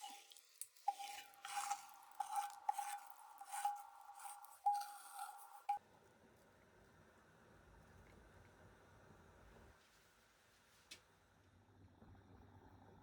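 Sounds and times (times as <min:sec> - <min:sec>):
utensil scraping in a pan: 0:00.0 - 0:05.8.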